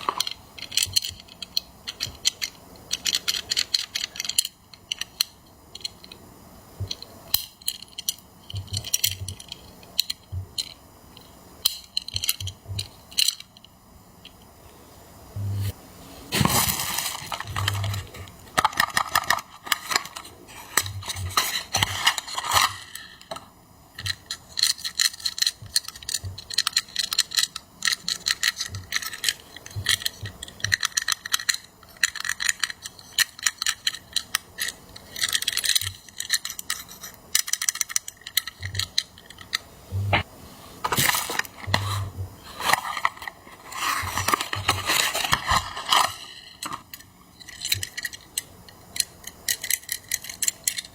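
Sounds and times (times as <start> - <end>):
toy vehicles clicking and clinking: 0.0 - 6.2, 24.0 - 39.6, 44.1 - 50.9
packaging rustling: 16.3 - 22.8, 40.8 - 46.8.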